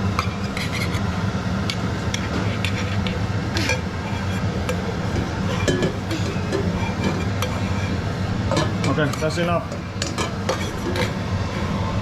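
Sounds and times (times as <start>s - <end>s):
steady low hum: 0.0s - 12.0s
utensil tapping metal pot: 1.7s - 11.2s.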